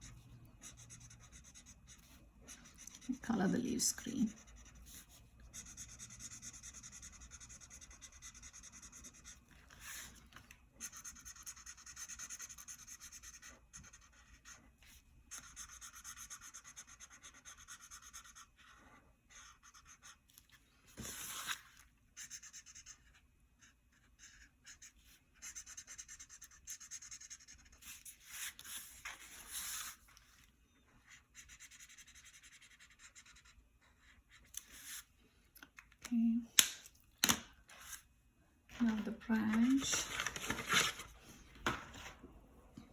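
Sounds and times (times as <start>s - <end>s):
marker scratching on paper: 0.0s - 10.2s, 10.8s - 20.2s, 22.2s - 30.0s, 31.0s - 35.1s.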